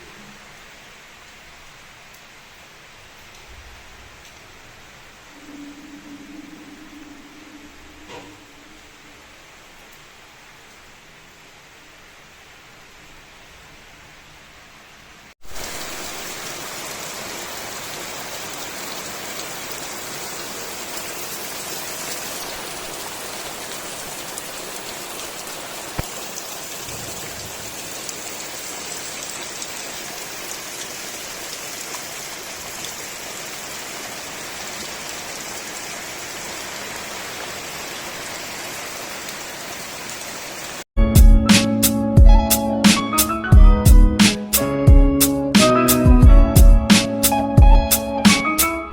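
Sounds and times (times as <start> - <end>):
heavy rain hissing: 0.0 - 12.6, 15.4 - 40.9.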